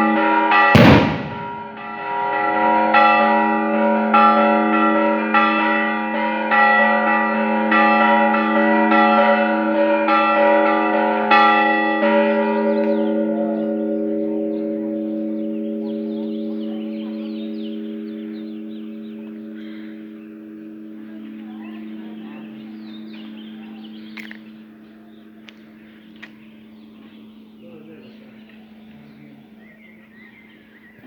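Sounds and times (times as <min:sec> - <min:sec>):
church bells ringing: 0:00.0 - 0:28.8
loud sharp crack: 0:00.8 - 0:01.8.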